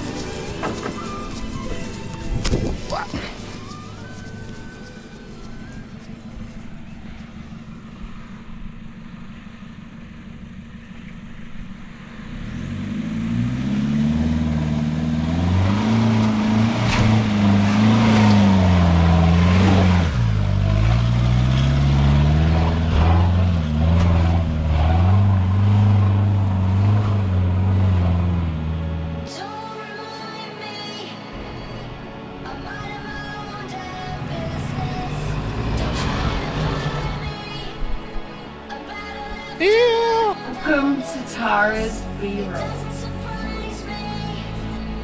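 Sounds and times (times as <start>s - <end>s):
engine revving under load: 11.9s - 29.2s, 33.2s - 37.8s.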